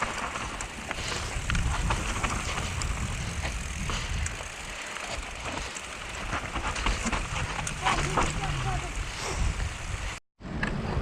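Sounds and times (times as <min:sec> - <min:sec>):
bike clicks and rattles: 0:00.0 - 0:10.2
bike tyres rumbling on dirt: 0:00.0 - 0:10.2
wind on microphone: 0:00.9 - 0:04.5, 0:06.2 - 0:11.0.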